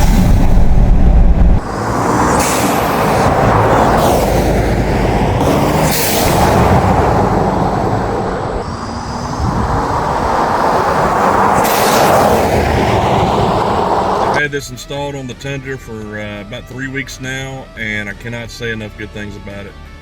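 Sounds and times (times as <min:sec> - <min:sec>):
engine revving: 0:00.0 - 0:14.4.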